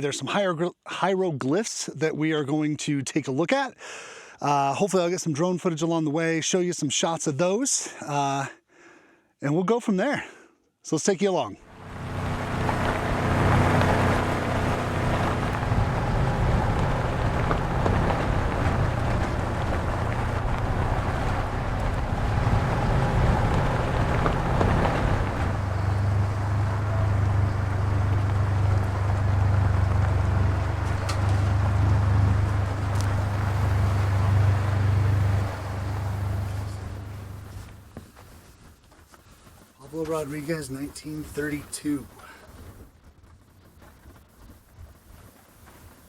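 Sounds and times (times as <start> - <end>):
vehicle engine droning: 11.6 - 38.0
road and wind noise: 11.6 - 38.7.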